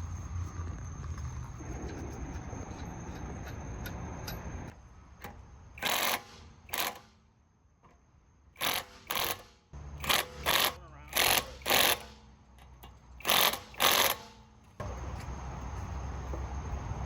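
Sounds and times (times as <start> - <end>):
steady low hum: 0.0 - 5.8
ratchet wrench ratcheting: 5.8 - 7.1, 8.6 - 14.5.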